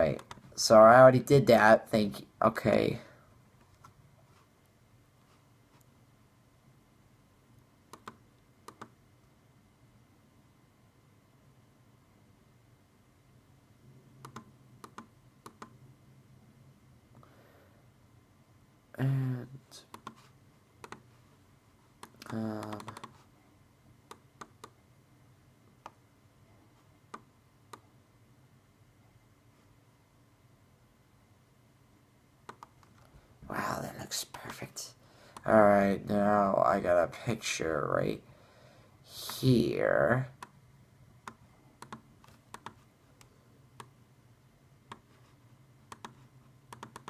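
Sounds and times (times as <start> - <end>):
low steady hum: 0.0 - 47.0
computer mouse clicks: 0.1 - 0.4, 7.9 - 9.0, 14.2 - 15.8, 19.9 - 21.1, 22.0 - 23.2, 24.1 - 24.8, 32.5 - 33.1, 41.2 - 44.0, 44.9 - 45.2, 45.9 - 47.0.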